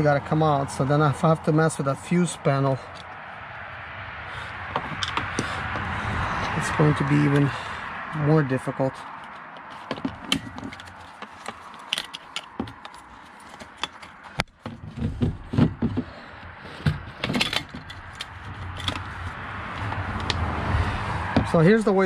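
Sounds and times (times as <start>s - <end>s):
plastic parts clicking and rattling: 9.1s - 20.4s.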